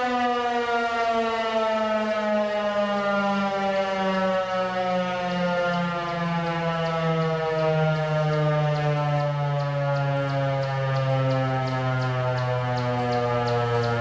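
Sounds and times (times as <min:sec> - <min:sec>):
outdoor warning siren steady tone: 0:00.0 - 0:14.0.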